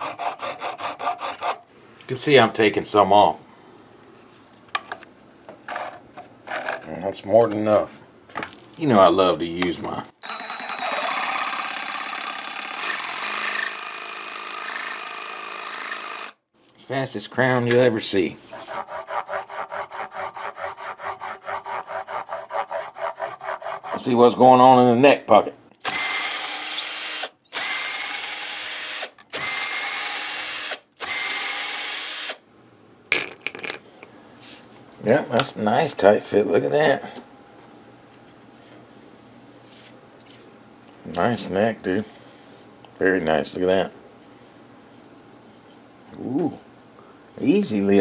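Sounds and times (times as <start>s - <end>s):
small power tool running: 10.2s - 16.4s, 25.8s - 32.4s.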